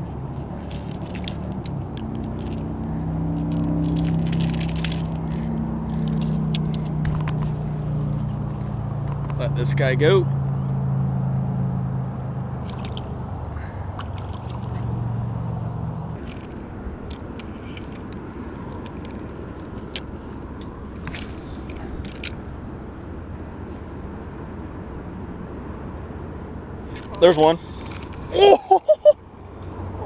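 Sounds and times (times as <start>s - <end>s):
low engine hum: 0.0s - 30.0s
faint scrapes and clicks: 16.2s - 20.4s.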